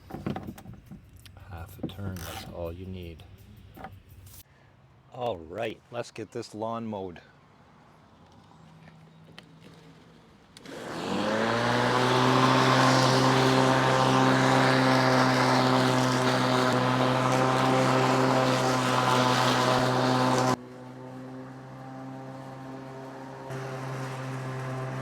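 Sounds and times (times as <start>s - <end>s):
electric mower motor humming: 10.6s - 25.0s.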